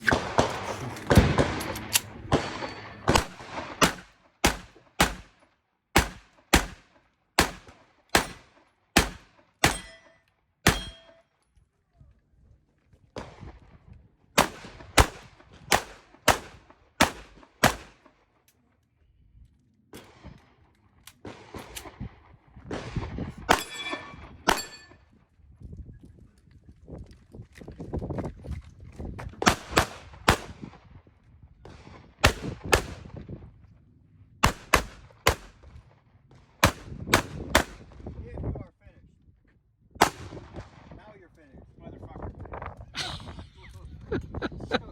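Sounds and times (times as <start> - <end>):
pistol shots: 0.0 - 5.4, 6.0 - 11.2, 14.4 - 18.1, 23.5 - 24.9, 32.2 - 33.1, 34.4 - 35.6, 36.6 - 37.9, 40.0 - 40.4.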